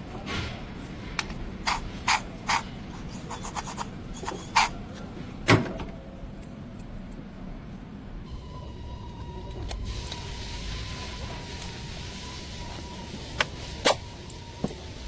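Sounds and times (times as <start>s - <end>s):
hand tools clicking and scraping: 1.2s - 4.8s.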